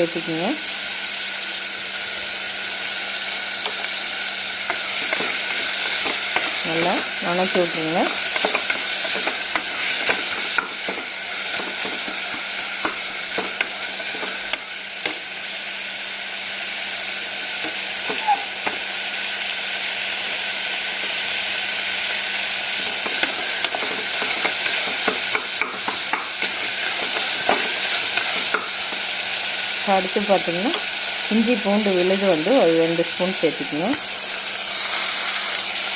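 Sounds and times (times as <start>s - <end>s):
vegetables sizzling in hot oil: 0.0s - 35.9s
spoon scraping a pan: 22.9s - 29.1s.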